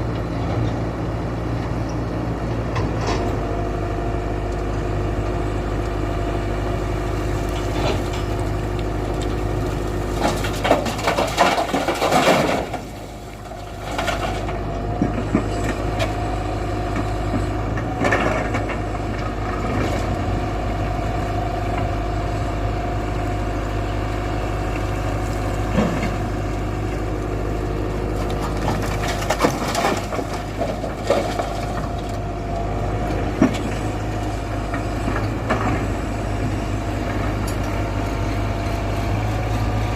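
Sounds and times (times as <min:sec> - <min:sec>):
excavator diesel engine running: 0:00.0 - 0:39.9
knocks and scraping: 0:10.0 - 0:16.2, 0:28.2 - 0:32.2.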